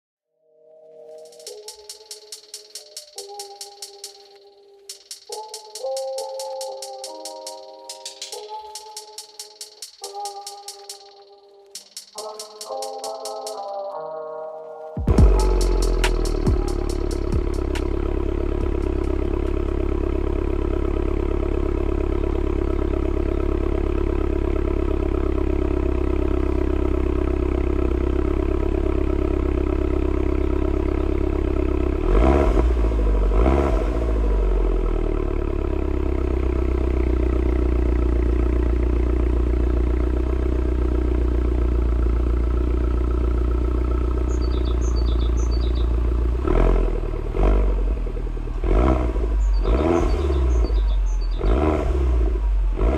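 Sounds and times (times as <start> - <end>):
car exhaust idling and revving: 15.1 - 52.9.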